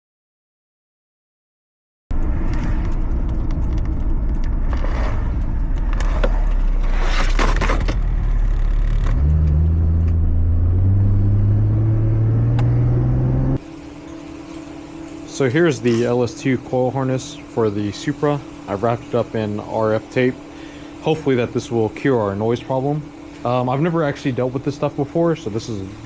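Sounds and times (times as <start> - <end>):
car engine revving: 2.2 - 13.6.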